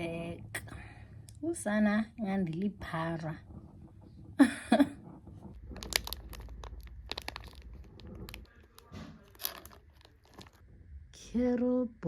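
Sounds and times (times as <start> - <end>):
packaging crinkling and tearing: 5.6 - 10.6
packaging rustling: 5.6 - 10.6.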